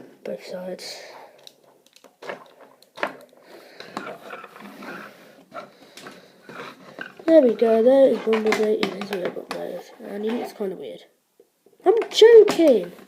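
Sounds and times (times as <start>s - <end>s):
plastic toy parts clicking: 1.4s - 3.4s.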